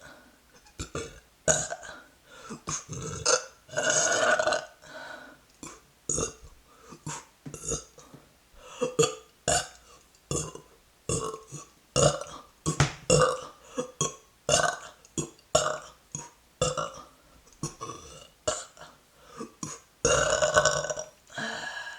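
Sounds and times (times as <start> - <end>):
woman burping: 2.7 - 4.8, 8.8 - 14.9.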